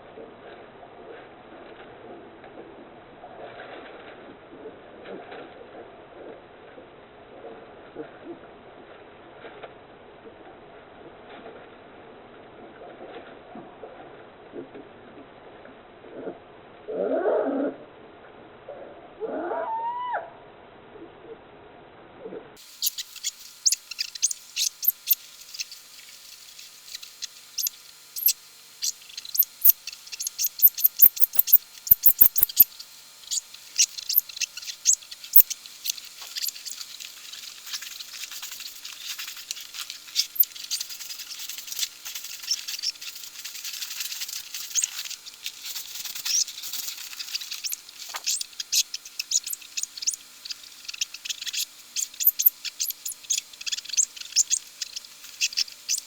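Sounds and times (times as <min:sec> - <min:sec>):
dense crackling rustle: 0:22.6 - 0:56.0.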